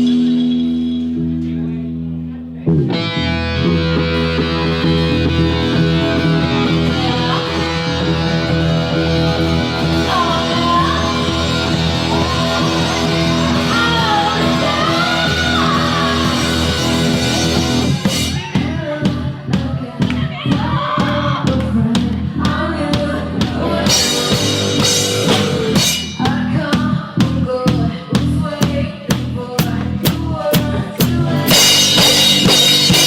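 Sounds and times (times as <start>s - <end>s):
distorted guitar chords: 0.0s - 19.5s, 21.3s - 27.3s, 31.1s - 33.0s
person singing and yelling: 9.6s - 24.9s.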